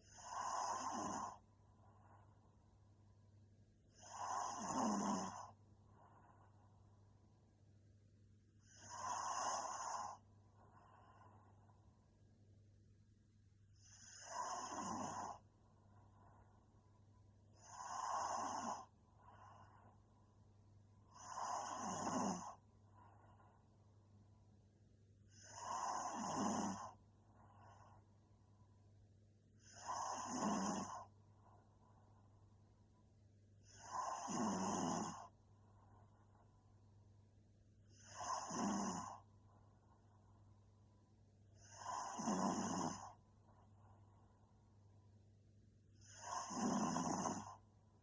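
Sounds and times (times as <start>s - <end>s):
woman snoring: 0.0s - 1.4s, 3.9s - 6.4s, 8.6s - 11.5s, 13.8s - 15.4s, 17.5s - 20.0s, 21.1s - 23.4s, 25.3s - 27.0s, 29.6s - 31.1s, 33.6s - 35.4s, 37.9s - 39.3s, 41.5s - 43.2s, 46.0s - 47.6s
faint breathing: 0.0s - 2.9s, 3.9s - 7.4s, 8.6s - 12.2s, 22.4s - 24.0s.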